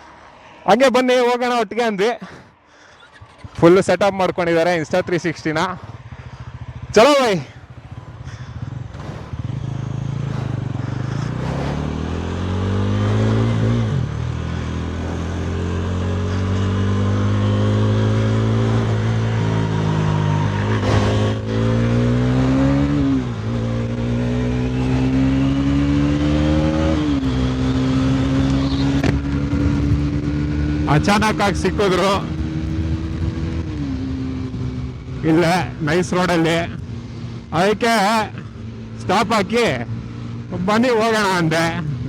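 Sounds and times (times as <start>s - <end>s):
motorcycle engine accelerating: 2.7s - 42.0s
wind rush: 28.2s - 31.0s.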